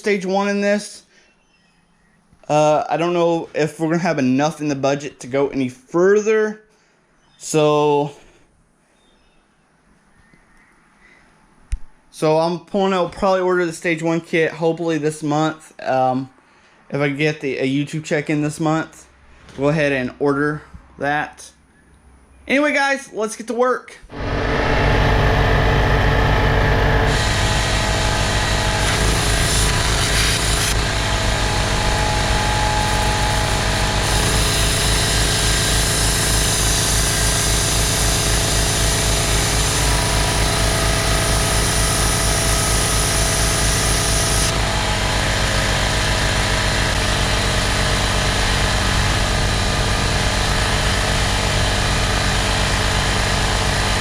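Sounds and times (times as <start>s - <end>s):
metalworking power tool pulsing: 24.1s - 54.0s.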